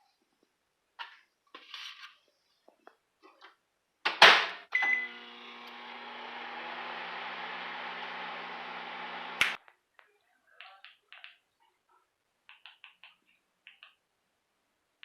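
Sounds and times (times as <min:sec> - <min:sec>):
household appliance humming: 0:04.8 - 0:09.6.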